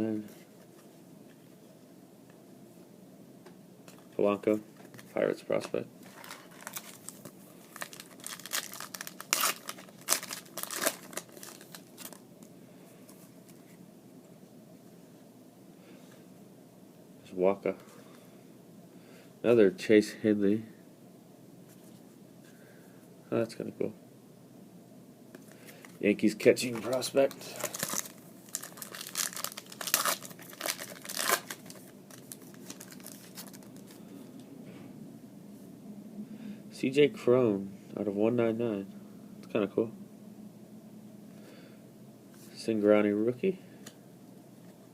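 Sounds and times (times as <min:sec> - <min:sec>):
foil wrapper crinkling and tearing: 0:06.1 - 0:12.2, 0:26.7 - 0:34.0.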